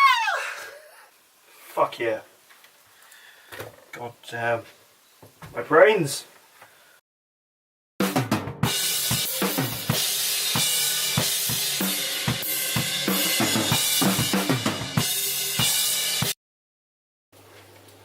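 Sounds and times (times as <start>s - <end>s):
band music: 8.0s - 16.3s
drum kit: 8.0s - 16.4s.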